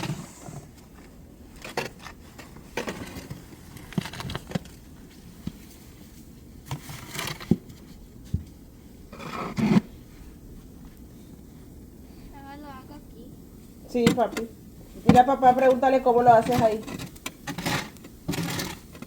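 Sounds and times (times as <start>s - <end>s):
knocks and scrapes: 0.0s - 5.9s, 16.3s - 19.0s.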